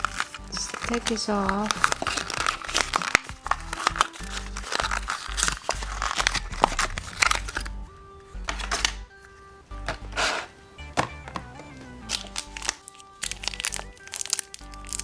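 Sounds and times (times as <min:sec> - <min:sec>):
plastic packaging crinkling: 0:00.0 - 0:07.8, 0:12.0 - 0:15.0
background music: 0:00.0 - 0:15.0.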